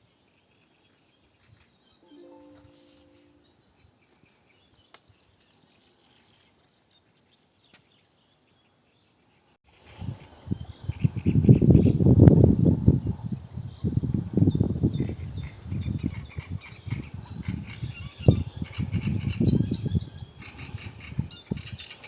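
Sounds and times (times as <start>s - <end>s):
wind buffeting microphone: 9.8s - 22.0s.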